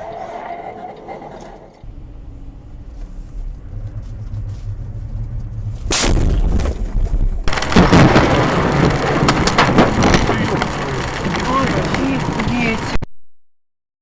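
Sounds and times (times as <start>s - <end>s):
vehicle rumbling: 0.0s - 13.0s
loud rough crackling: 3.4s - 13.0s
loud impact bang: 5.6s - 11.5s.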